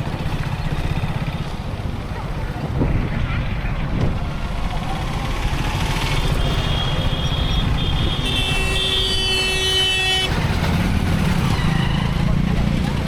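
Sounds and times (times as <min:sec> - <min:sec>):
motorcycle engine and road noise: 0:00.0 - 0:13.0
vehicle horn: 0:06.4 - 0:10.4.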